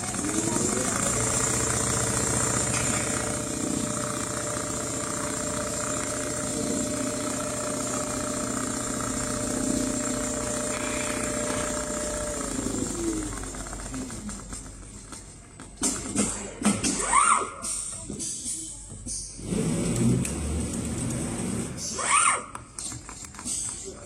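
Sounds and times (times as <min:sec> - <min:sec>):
sewing machine stitching: 0:00.0 - 0:15.1.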